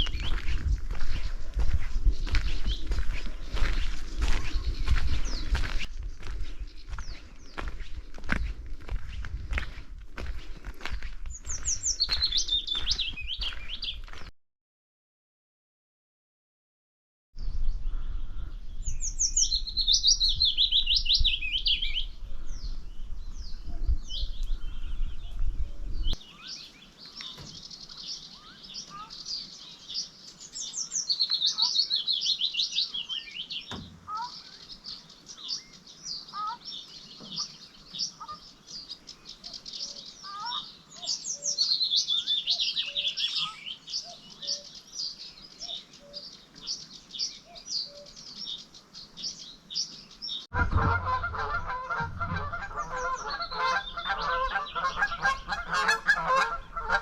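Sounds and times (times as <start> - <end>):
songbirds singing: 0.0 - 14.3, 17.4 - 50.5, 51.3 - 57.0
low rumble: 17.4 - 26.2, 50.6 - 54.1.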